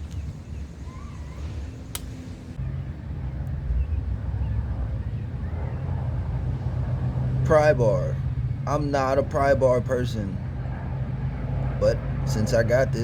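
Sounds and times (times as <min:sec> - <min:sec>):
low rumble with hum: 0:00.0 - 0:13.0
sharp click: 0:01.9 - 0:02.1.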